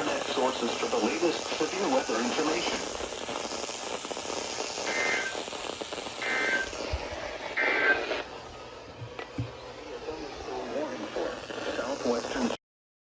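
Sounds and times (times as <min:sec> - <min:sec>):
screechy digital data bursts: 0:00.0 - 0:08.3
radio hiss: 0:00.0 - 0:12.6.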